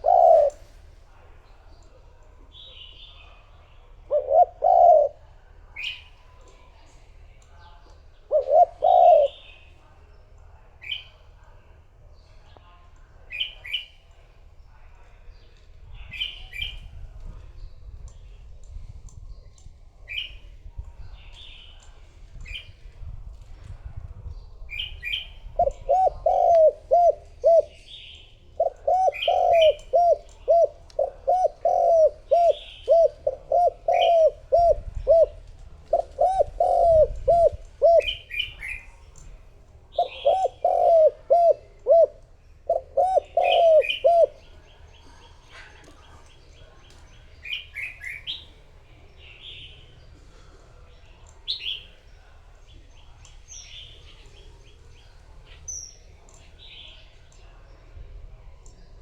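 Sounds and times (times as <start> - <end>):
dove cooing: 0.0 - 0.9, 3.8 - 6.1, 8.2 - 9.7, 24.7 - 39.0, 39.9 - 46.0
small birds chirping: 0.0 - 59.0.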